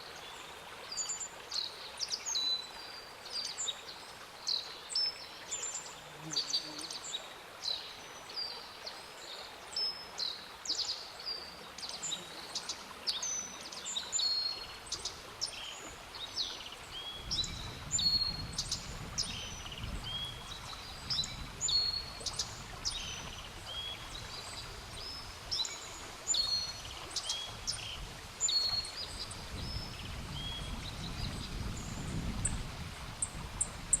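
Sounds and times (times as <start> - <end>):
bunting singing: 6.0 - 7.0, 11.8 - 12.9.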